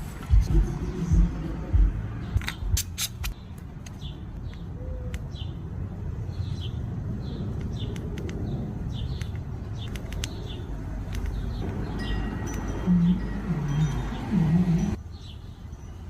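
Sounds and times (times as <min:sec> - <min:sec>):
sharp clicks: 0:07.5 - 0:12.7.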